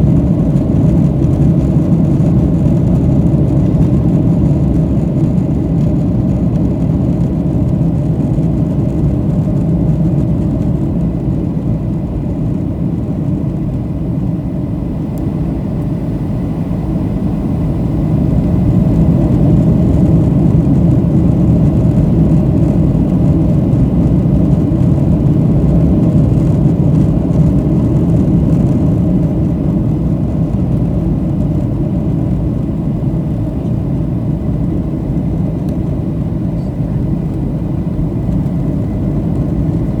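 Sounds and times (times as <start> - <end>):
airplane cabin rumble: 0.0 - 40.0.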